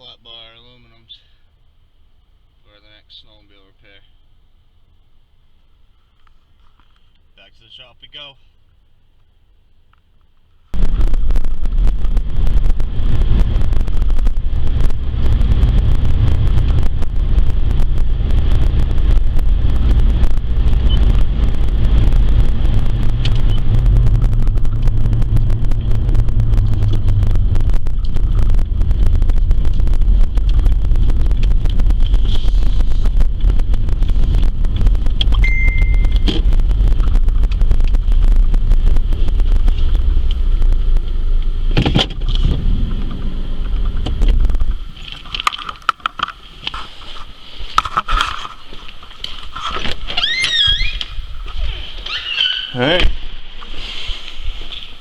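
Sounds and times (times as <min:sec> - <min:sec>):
vehicle engine and road rumble: 0:00.0 - 0:55.0
short high beep: 0:35.4 - 0:36.3.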